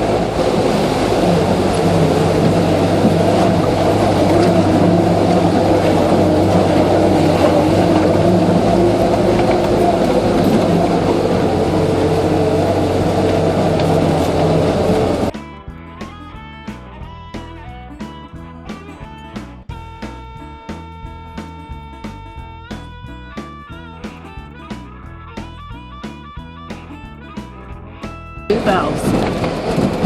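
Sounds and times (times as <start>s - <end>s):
car engine droning while driving: 0.0s - 15.3s, 28.5s - 30.0s.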